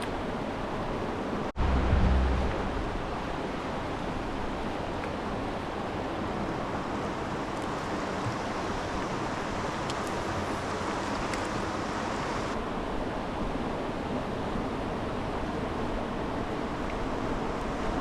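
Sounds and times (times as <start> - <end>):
steady rushing noise: 1.4 - 4.9.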